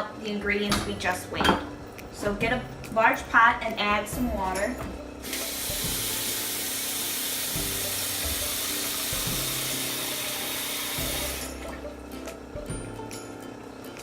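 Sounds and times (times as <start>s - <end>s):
kitchen tap running into pot: 5.2s - 11.9s.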